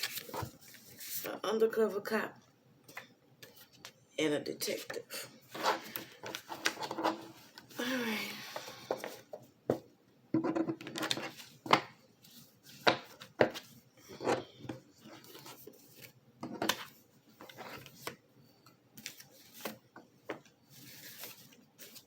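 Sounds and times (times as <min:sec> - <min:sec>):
cards being shuffled: 0:00.0 - 0:01.3.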